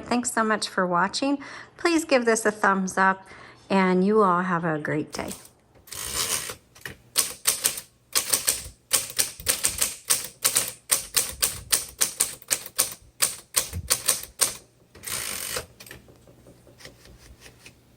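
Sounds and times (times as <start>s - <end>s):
typewriter key strikes: 5.2s - 16.5s.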